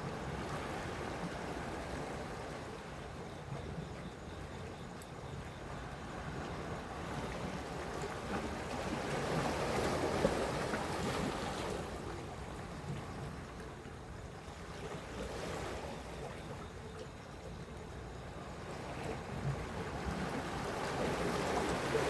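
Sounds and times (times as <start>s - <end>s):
sea waves washing ashore: 4.4s - 17.0s, 17.7s - 22.0s.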